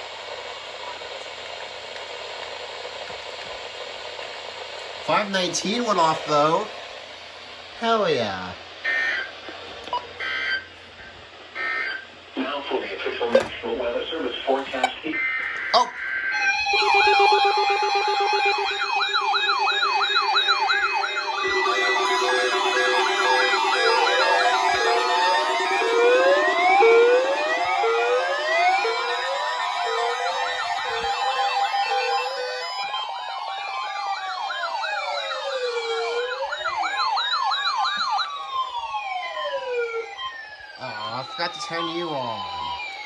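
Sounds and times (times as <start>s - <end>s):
electronic siren yelp sweeps: 5.1s - 6.7s, 15.1s - 43.0s
two-tone hi-lo siren: 5.1s - 6.7s, 8.8s - 10.7s, 11.6s - 12.1s, 15.1s - 43.0s
pulsing steady siren tone: 8.8s - 12.1s, 15.1s - 43.0s
rising siren wails: 15.1s - 43.0s.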